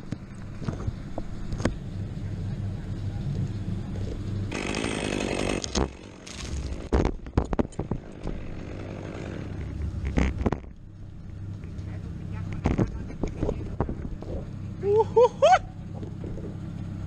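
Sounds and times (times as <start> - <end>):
steady low rumble: 0.0 - 4.6, 5.4 - 17.0
chainsaw running: 4.5 - 6.9, 7.8 - 10.5
sharp knocks and cracks: 4.5 - 8.5.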